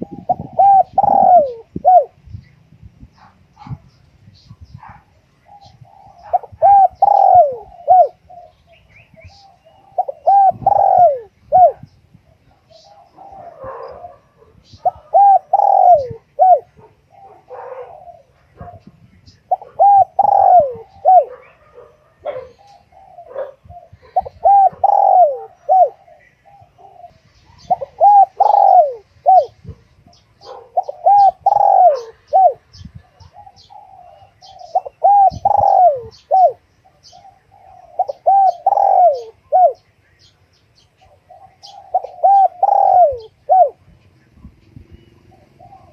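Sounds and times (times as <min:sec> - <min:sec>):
dove cooing: 0:00.0 - 0:02.2, 0:04.9 - 0:39.9, 0:41.0 - 0:45.9
small birds chirping: 0:00.0 - 0:45.9.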